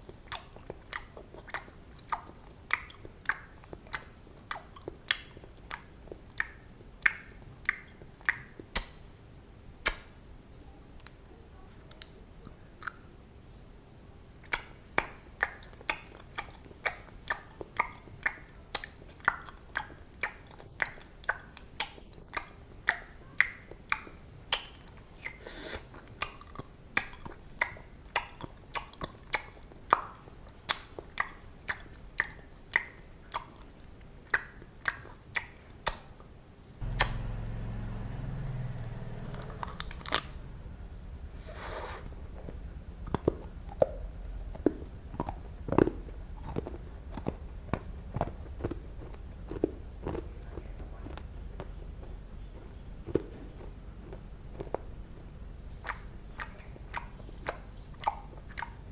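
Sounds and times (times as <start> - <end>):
chewing gum clicks and snaps: 0.0 - 9.1, 9.8 - 10.1, 11.0 - 13.1, 14.4 - 36.2, 38.5 - 58.9
steady low rumble: 36.8 - 58.9.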